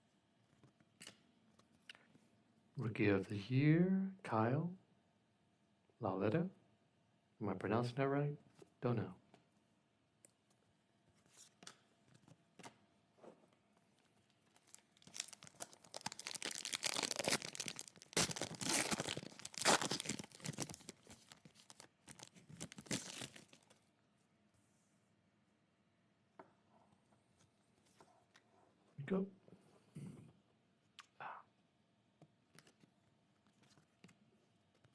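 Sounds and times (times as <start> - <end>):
foil wrapper tearing and crinkling: 14.6 - 23.8.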